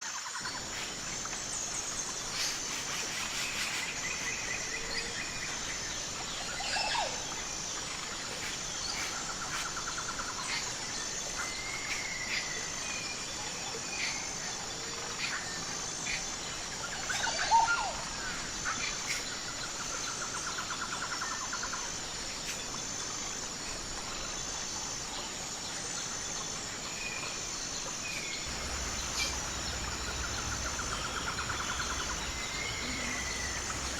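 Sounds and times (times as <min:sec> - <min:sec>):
pulsing insect chorus: 0:28.4 - 0:33.9
birds chirping and calling: 0:28.5 - 0:33.9.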